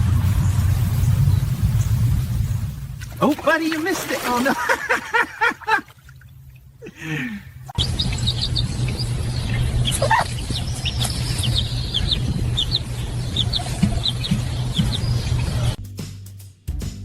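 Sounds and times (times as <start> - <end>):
low hum: 0.0 - 3.2, 5.6 - 15.8
small birds chirping: 7.0 - 15.8.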